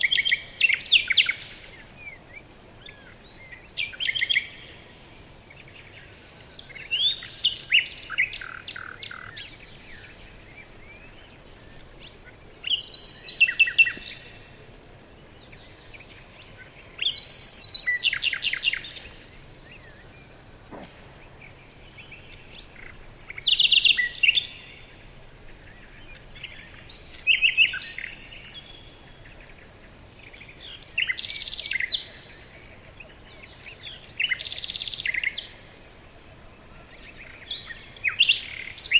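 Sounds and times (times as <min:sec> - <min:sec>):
songbird chirping and trilling: 0:00.0 - 0:38.9.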